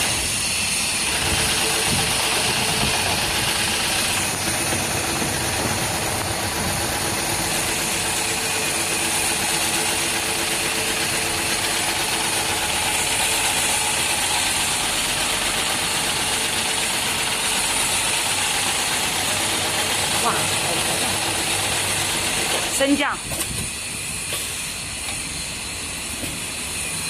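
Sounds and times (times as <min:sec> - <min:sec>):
industrial sewing machine running: 0:00.0 - 0:23.2.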